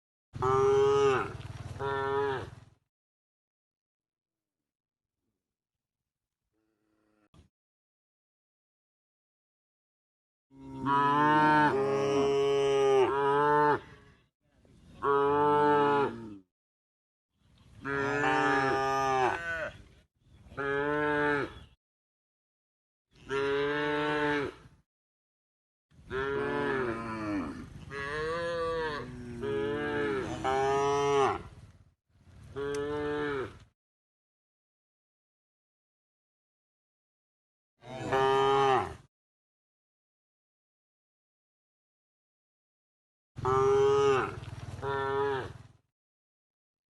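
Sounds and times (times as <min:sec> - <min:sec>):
cows mooing: 0:00.4 - 0:02.5, 0:10.6 - 0:14.0, 0:15.0 - 0:16.4, 0:17.8 - 0:19.8, 0:23.2 - 0:24.7, 0:26.1 - 0:31.6, 0:32.6 - 0:33.6, 0:37.8 - 0:39.1, 0:43.4 - 0:45.6.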